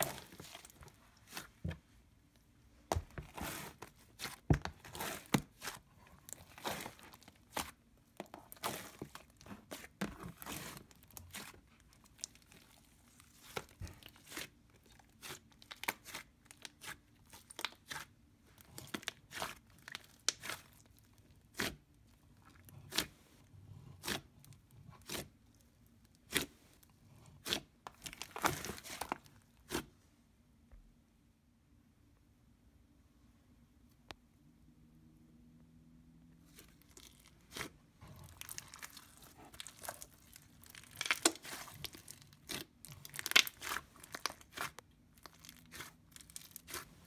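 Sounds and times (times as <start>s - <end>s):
slime popping and crackling: 36.8s - 47.0s.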